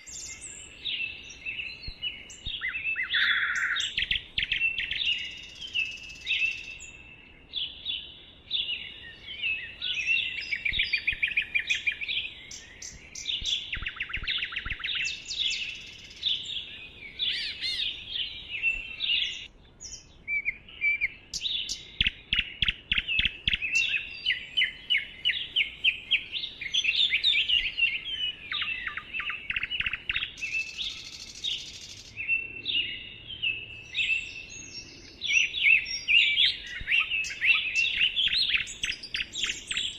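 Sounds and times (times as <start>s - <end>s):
bird trills: 0.0s - 7.0s, 9.4s - 32.2s
songbirds chirping and singing: 0.0s - 39.9s.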